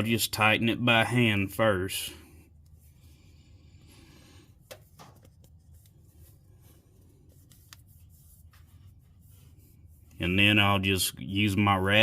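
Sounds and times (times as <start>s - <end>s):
oil filter rubbing and clicking: 2.5s - 3.4s, 4.2s - 10.6s.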